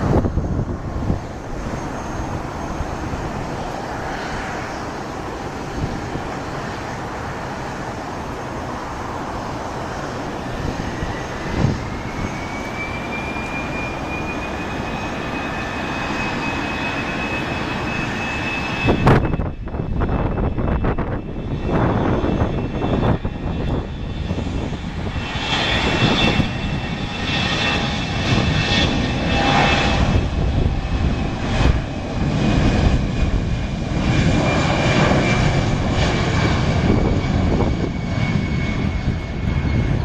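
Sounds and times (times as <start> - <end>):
jet engines roaring: 0.0 - 40.0
wind buffeting microphone: 0.0 - 40.0.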